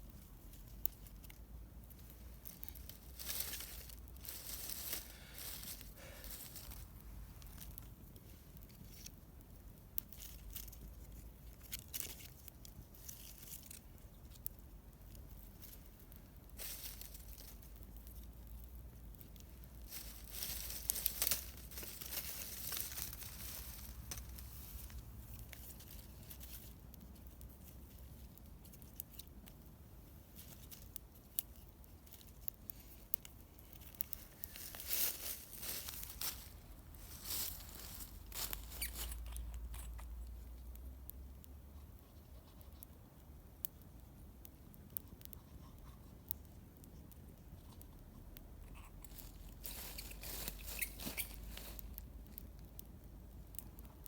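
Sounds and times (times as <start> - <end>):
campfire crackling: 0.0 - 42.0, 42.9 - 54.0
faint low rumble: 0.0 - 54.0.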